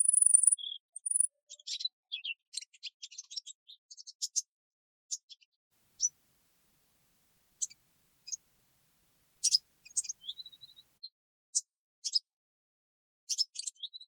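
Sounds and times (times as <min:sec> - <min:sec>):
bird trill: 0:00.0 - 0:01.3, 0:06.0 - 0:06.2, 0:07.6 - 0:08.5, 0:09.2 - 0:10.8
small birds chirping: 0:00.0 - 0:01.3, 0:06.0 - 0:10.9.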